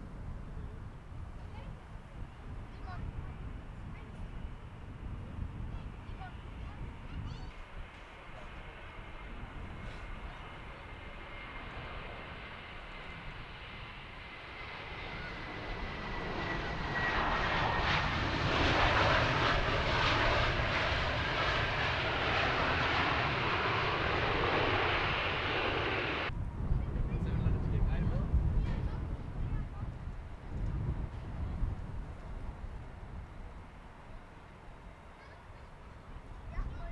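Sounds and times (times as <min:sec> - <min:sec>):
jet engines roaring: 0:07.6 - 0:26.4.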